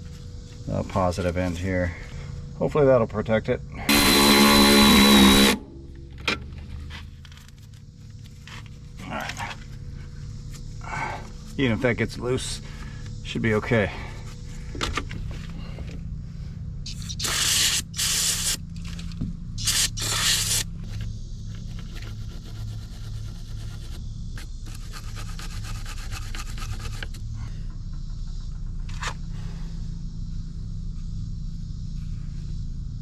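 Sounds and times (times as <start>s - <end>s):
steady low hum: 0.0s - 33.0s
hands scraping parts: 19.6s - 20.6s.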